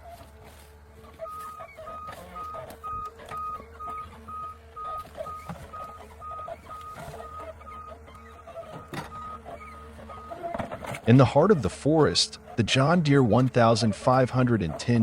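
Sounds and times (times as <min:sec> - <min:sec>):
diesel engine running: 0:00.0 - 0:15.0
reversing alarm beeps: 0:01.0 - 0:10.6.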